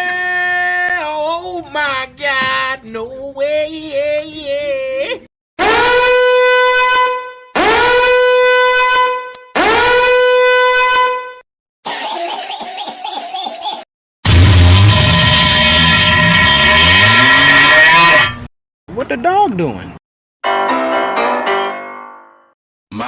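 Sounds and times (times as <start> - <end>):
swooping horn blasts: 5.6 - 11.4, 14.3 - 18.5.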